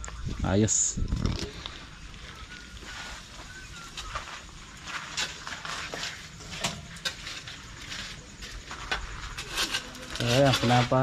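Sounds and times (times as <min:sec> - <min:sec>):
faint high chirps: 0:00.0 - 0:05.4
hand tools scraping soil: 0:02.8 - 0:11.0.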